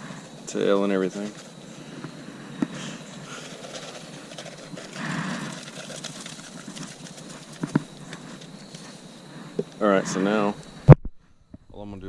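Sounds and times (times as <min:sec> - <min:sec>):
salt rustling on pelt: 0:02.8 - 0:09.0.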